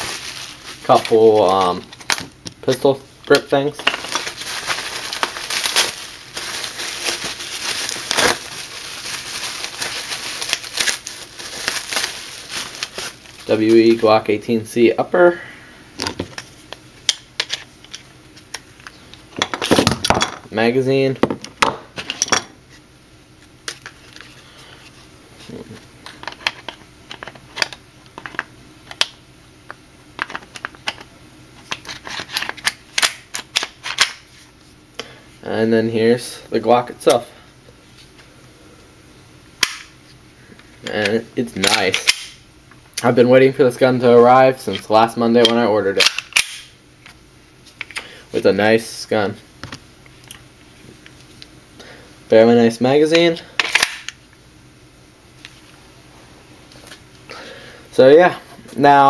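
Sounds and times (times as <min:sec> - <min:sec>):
packing material crinkling: 0:00.0 - 0:02.9, 0:03.7 - 0:14.0.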